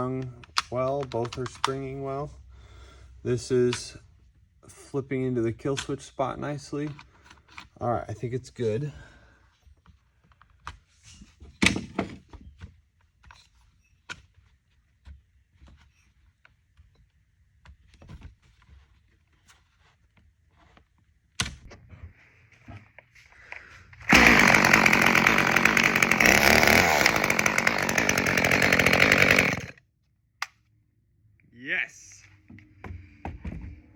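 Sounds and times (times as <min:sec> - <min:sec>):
chainsaw engine running: 0:24.0 - 0:29.8.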